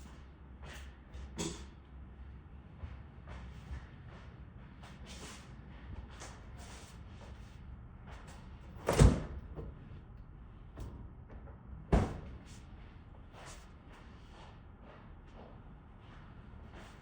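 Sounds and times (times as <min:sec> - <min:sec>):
door thuds: 0:11.9 - 0:12.4.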